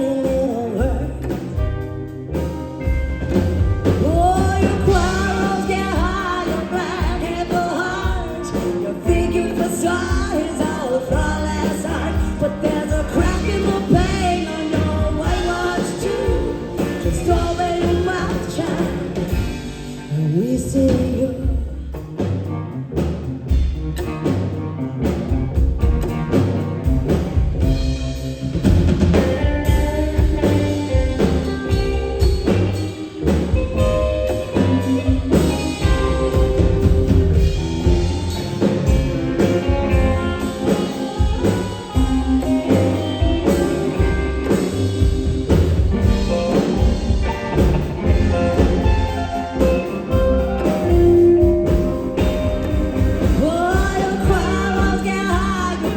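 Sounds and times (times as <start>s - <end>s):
drum kit steady beat: 0.0s - 20.2s, 20.9s - 55.9s
live rock band instrumental: 0.0s - 55.9s.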